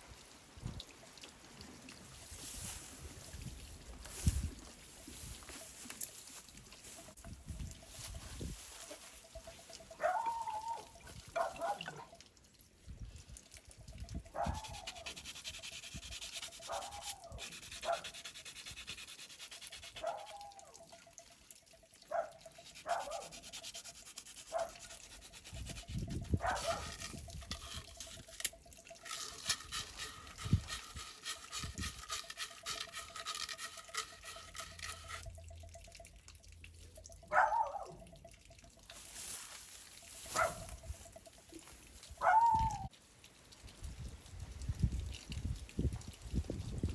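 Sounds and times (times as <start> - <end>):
dog barking: 10.0 - 12.2, 14.3 - 14.8, 16.7 - 18.2, 20.0 - 20.7, 22.1 - 23.3, 24.5 - 24.8, 26.4 - 27.0, 37.2 - 38.0, 40.3 - 40.7, 42.2 - 42.9.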